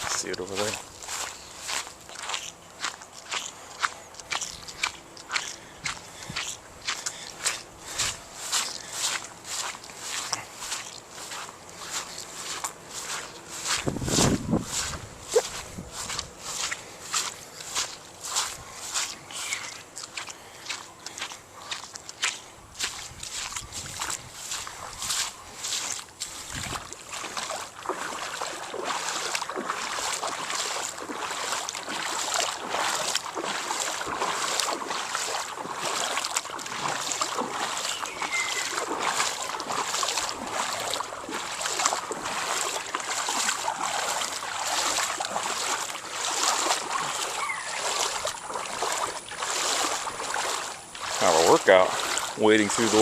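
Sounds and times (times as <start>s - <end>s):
wading through water: 0.0s - 53.0s.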